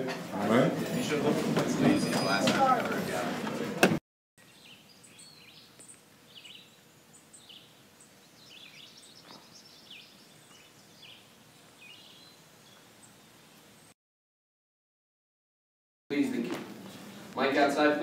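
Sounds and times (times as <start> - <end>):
low steady hiss: 4.4 - 13.9
birds chirping faintly: 4.4 - 14.0.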